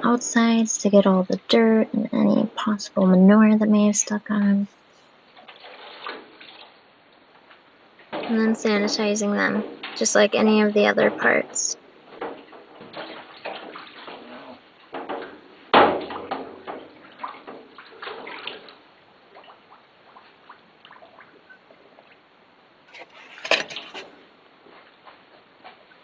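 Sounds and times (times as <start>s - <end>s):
water sloshing and splashing: 5.4s - 6.8s, 12.8s - 14.3s.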